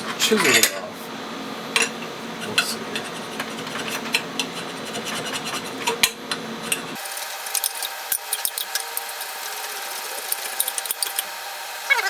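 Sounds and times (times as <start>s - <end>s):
chisel scraping metal: 6.9s - 11.3s.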